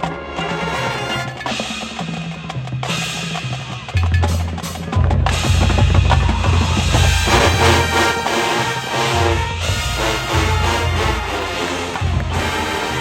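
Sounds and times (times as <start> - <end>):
winds and brass holding chords: 0.0 - 1.8, 6.8 - 13.0
marching band drum roll: 0.0 - 13.0
bass drums: 1.5 - 13.0.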